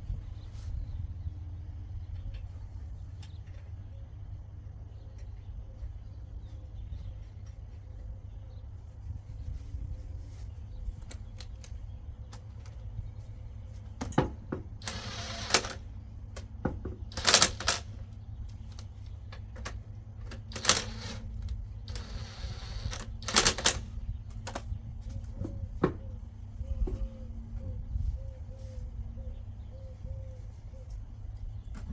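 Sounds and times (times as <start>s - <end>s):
harsh rattling bursts: 14.8s - 15.9s, 17.1s - 24.6s.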